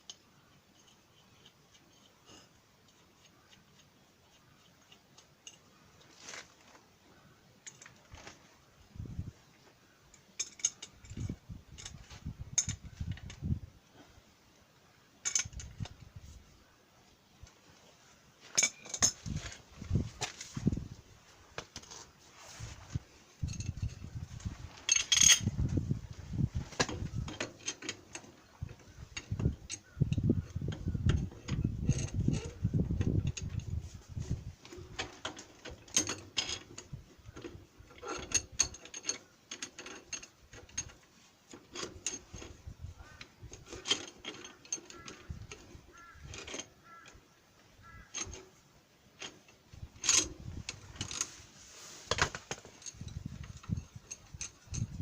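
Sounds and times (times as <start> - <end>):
hand tools clinking on metal: 10.2 - 12.0, 15.2 - 15.7, 18.5 - 19.6, 24.8 - 25.6, 35.0 - 47.2.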